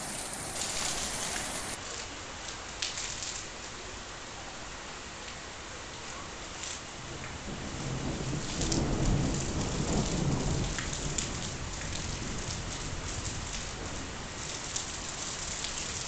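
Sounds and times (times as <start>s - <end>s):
light rain pattering: 0.0s - 1.8s, 7.6s - 16.0s
thunder rumbling: 0.0s - 1.8s.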